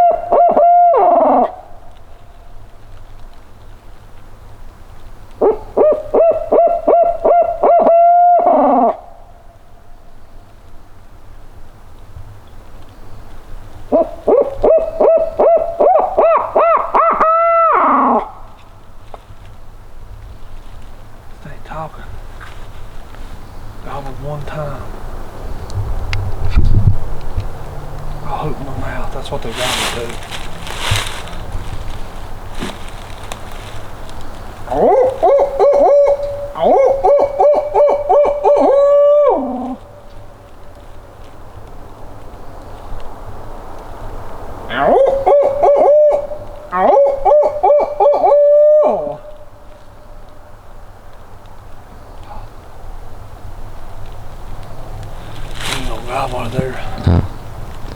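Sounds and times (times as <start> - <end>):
owl hooting: 0.0 - 2.3, 5.4 - 9.6, 13.9 - 18.6, 32.6 - 40.6, 44.7 - 50.3, 55.2 - 57.5.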